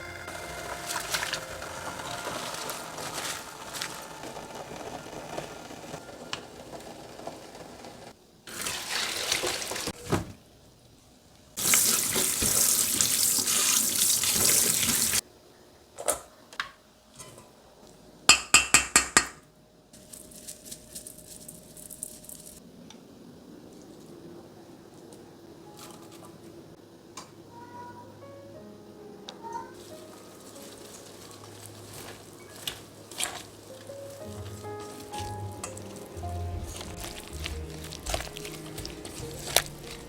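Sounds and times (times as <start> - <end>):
tap water running into sink: 8.5 - 10.0, 11.6 - 15.2.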